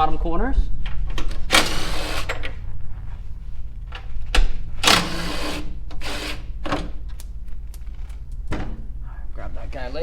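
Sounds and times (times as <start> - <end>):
impact driver motor bursts: 1.5 - 2.4, 4.8 - 6.5.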